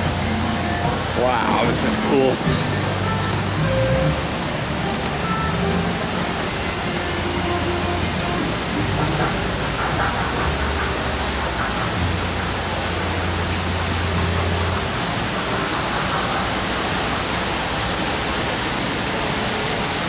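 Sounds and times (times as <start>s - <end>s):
low hum: 0.0s - 9.8s
running water: 0.0s - 20.0s.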